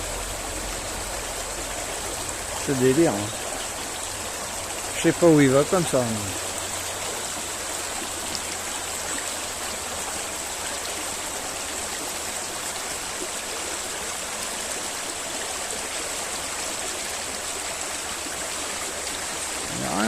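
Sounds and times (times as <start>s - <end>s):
river water rushing: 0.0s - 20.0s.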